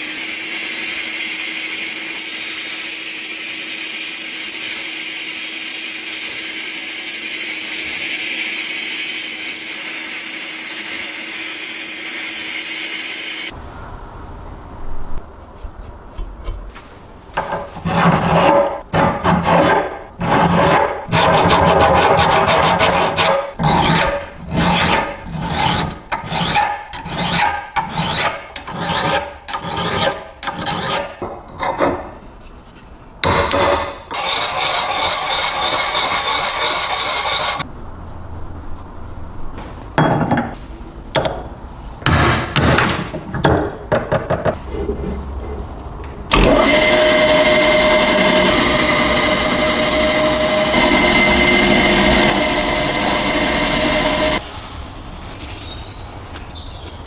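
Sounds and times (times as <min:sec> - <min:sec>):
rusty metal being rubbed: 0:17.5 - 0:37.7
small power tool running: 0:46.3 - 0:54.4.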